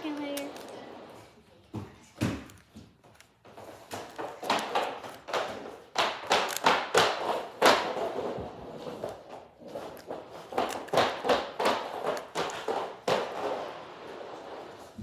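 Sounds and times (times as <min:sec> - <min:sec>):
puzzle cube plastic clicks: 0:04.1 - 0:05.3, 0:06.2 - 0:06.7, 0:09.9 - 0:11.2.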